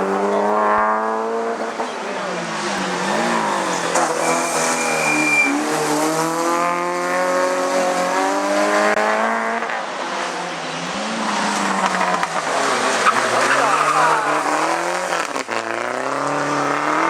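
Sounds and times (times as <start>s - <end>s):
race car engine at full throttle: 0.0s - 17.0s
brief high squeal: 4.1s - 5.7s.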